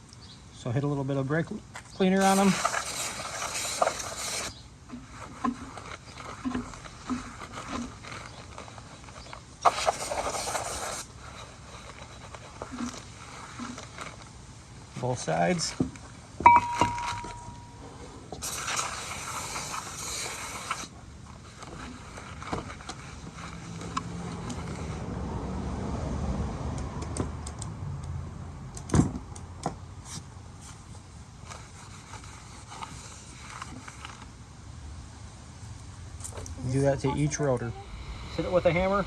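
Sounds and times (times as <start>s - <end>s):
aerosol spray hiss: 2.2s - 4.6s, 9.6s - 11.7s, 18.4s - 20.9s.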